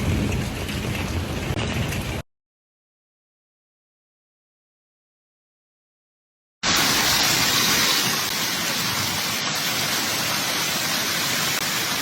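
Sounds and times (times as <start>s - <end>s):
heavy rain downpour: 0.0s - 2.2s, 6.6s - 12.0s.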